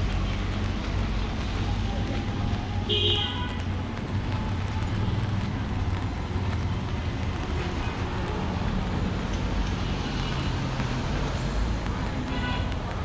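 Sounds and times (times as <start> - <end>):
traffic noise: 0.0 - 13.0
rain hissing: 3.6 - 13.0.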